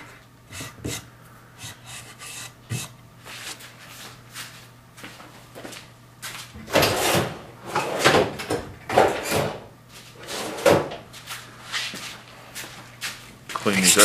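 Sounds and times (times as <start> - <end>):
faint steady hum: 0.0 - 14.0
rough rubbing strokes on wood: 0.5 - 4.0.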